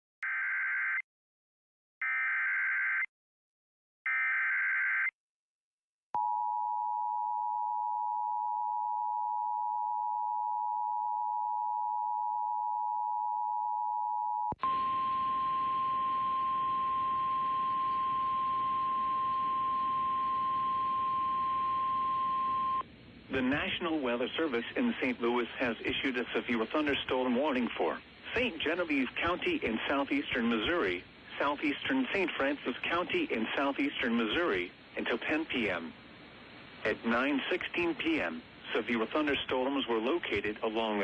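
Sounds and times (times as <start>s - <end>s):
steady warning alarm tone: 14.6s - 22.8s
two-tone attention signal: 14.6s - 22.8s
radio static: 23.3s - 36.0s, 36.8s - 41.0s.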